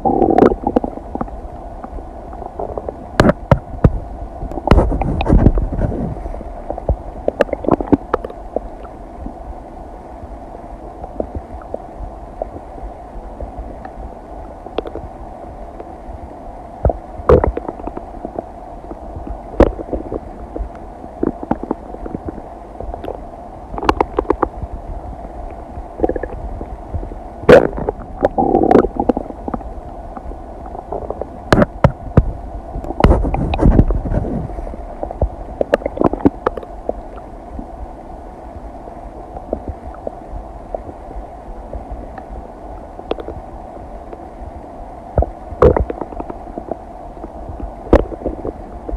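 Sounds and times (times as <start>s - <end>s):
stomach gurgling and popping: 0.0s - 9.4s, 11.0s - 11.8s, 14.7s - 15.1s, 16.8s - 24.8s, 25.5s - 37.7s, 39.4s - 41.0s, 43.0s - 43.5s, 45.2s - 48.9s
steady low hum: 0.0s - 48.9s.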